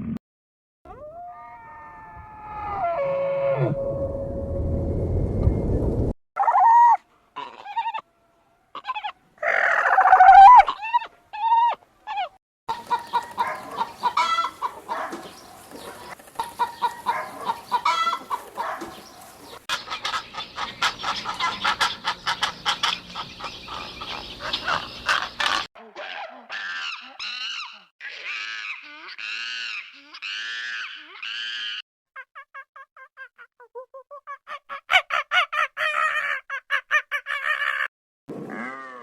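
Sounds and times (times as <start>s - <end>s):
background noise: 6.4s - 21.7s
bird calls: 12.7s - 25.7s.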